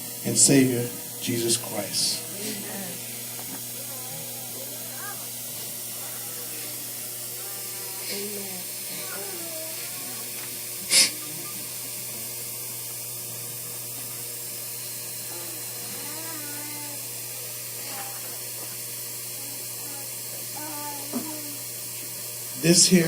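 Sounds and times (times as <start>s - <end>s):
sharp burst of hissing: 0.0s - 12.8s
faint indistinct voices: 2.1s - 22.2s.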